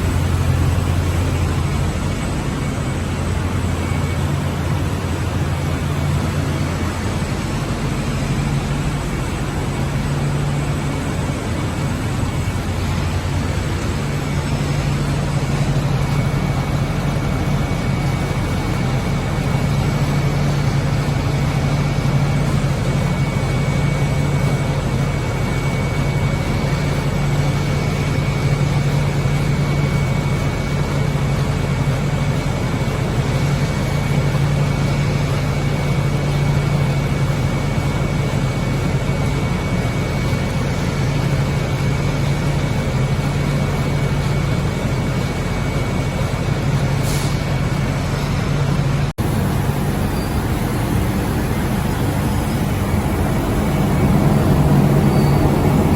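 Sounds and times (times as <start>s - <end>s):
machinery humming: 0.0s - 55.9s
thin high whine: 31.9s - 55.9s.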